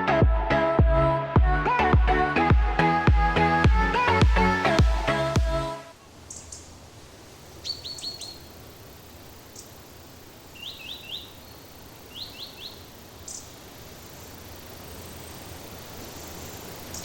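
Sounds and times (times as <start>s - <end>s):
outdoor background hiss: 0.0s - 17.0s
small birds chirping: 6.0s - 17.0s.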